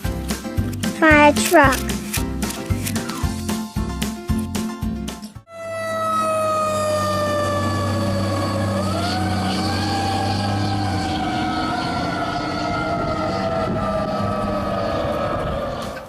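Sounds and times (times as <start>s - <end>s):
music with a beat: 0.0s - 5.3s
fire truck siren wailing: 5.5s - 16.0s.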